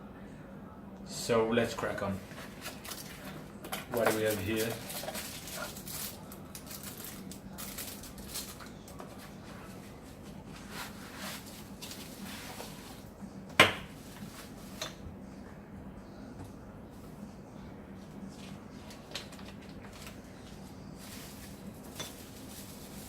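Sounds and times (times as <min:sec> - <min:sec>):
packaging rustling and scraping: 0:02.2 - 0:13.1, 0:18.8 - 0:23.0.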